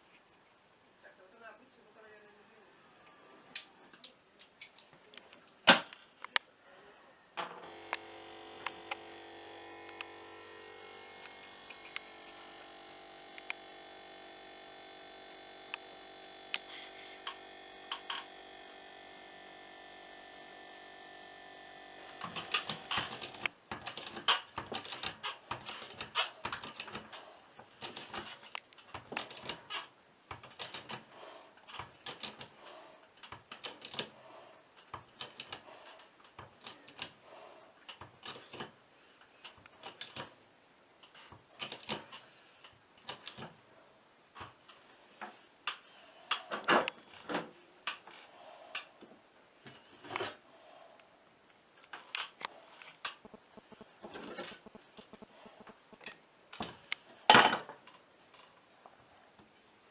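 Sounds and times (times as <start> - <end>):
steady hum: 7.6 - 23.5, 48.7 - 57.0.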